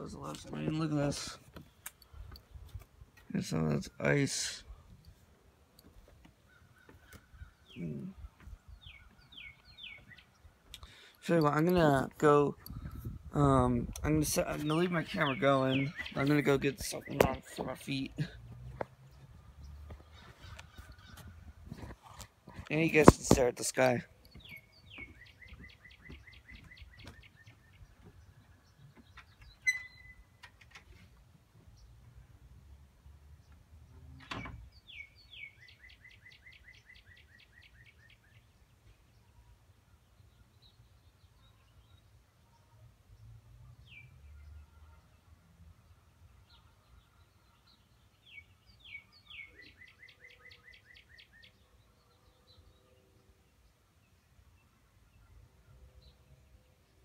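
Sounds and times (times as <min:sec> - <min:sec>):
songbird singing: 0:00.0 - 0:57.0
songbird whistling: 0:29.6 - 0:30.3.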